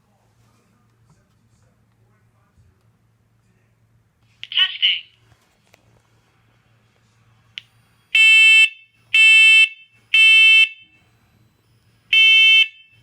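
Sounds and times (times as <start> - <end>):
smoke alarm beeping: 7.6 - 13.0.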